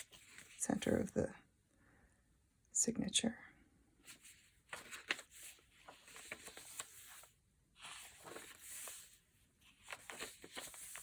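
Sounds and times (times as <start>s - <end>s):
paper pages rustling: 0.0s - 0.7s, 4.0s - 11.0s.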